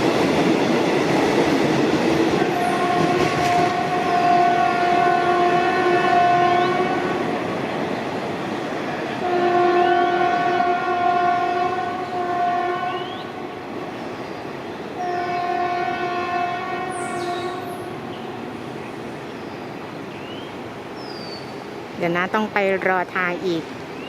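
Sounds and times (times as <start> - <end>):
train rumbling past: 0.0 - 24.0
locomotive horn blasts: 2.4 - 7.2, 9.2 - 13.4, 15.0 - 17.9.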